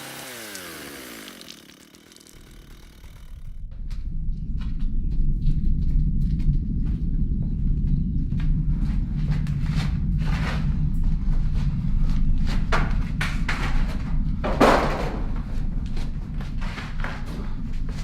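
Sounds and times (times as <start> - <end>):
steady low rumble: 3.1 - 18.0
knocks and thuds: 12.6 - 15.5.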